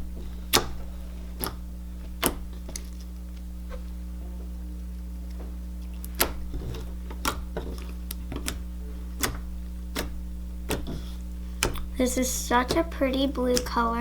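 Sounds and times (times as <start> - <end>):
low electrical hum: 0.0 - 14.0
slime popping and clicking: 7.2 - 8.6.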